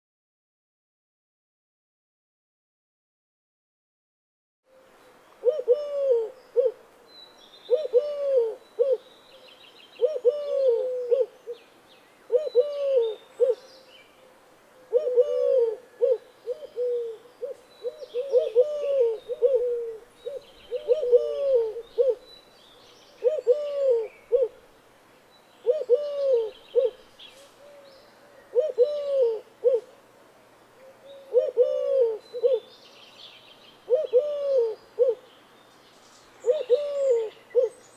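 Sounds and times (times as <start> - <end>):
faint bird chirping: 4.7 - 30.0, 30.7 - 37.9
dove cooing: 5.4 - 6.8, 7.7 - 11.6, 12.3 - 22.3, 23.2 - 24.6, 25.6 - 30.0, 30.8 - 32.7, 33.8 - 35.3, 36.4 - 37.8.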